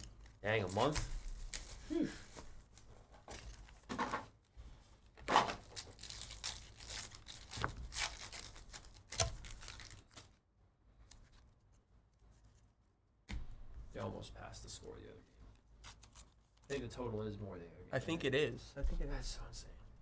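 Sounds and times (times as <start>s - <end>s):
wrappers tearing and crinkling: 0.0s - 3.9s, 5.2s - 10.4s, 15.8s - 16.8s.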